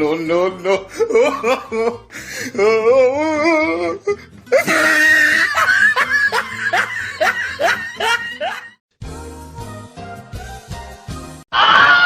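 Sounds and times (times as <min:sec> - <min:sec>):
person laughing: 0:00.6 - 0:08.8.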